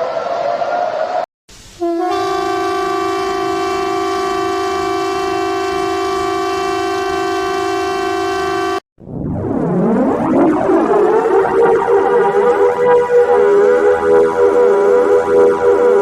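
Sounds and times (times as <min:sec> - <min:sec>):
horn-like alarm tone: 0:01.8 - 0:08.8, 0:11.6 - 0:16.0
rising siren wail: 0:02.0 - 0:16.0.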